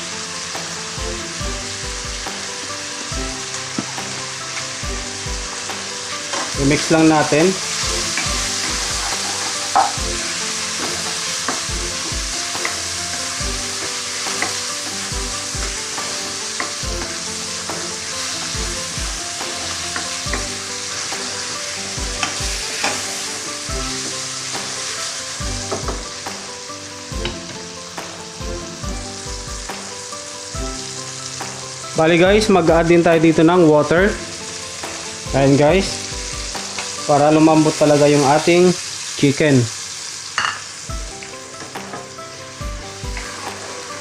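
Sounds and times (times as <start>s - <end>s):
chicken sizzling in hot oil: 0.0s - 44.0s
utensil scraping a pan: 6.2s - 14.6s, 43.1s - 43.9s.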